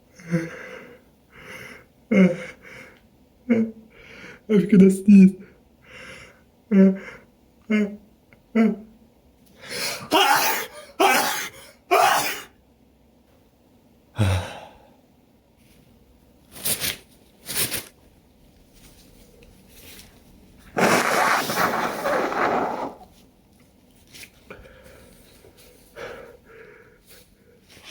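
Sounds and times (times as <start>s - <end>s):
person sneezing: 9.8s - 12.5s.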